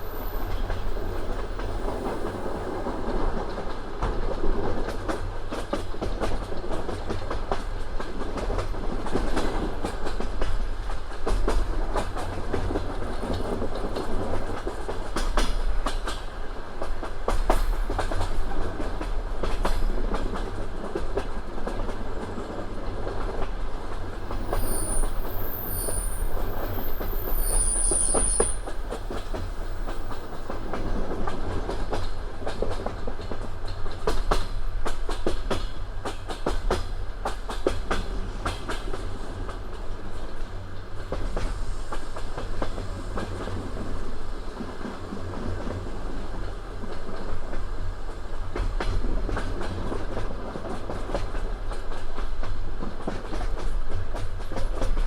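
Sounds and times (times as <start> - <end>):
train running rumble: 0.0 - 55.0
train wheels clattering over rail joints: 0.0 - 55.0
high-pitched wheel squeals: 24.2 - 30.5.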